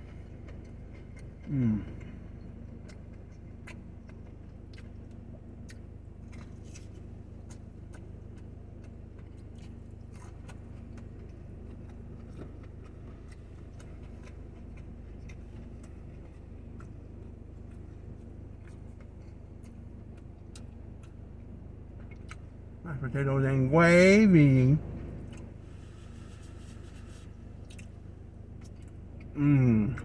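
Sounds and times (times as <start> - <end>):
low background hum: 0.0 - 30.0
wet chewing mouth clicks: 2.8 - 17.0, 18.6 - 21.2, 22.0 - 22.6, 26.2 - 28.0.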